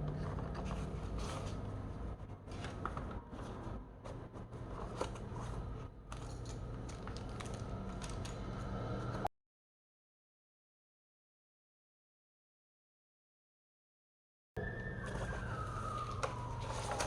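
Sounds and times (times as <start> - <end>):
packaging rustling and scraping: 0.0 - 8.4, 15.0 - 17.0.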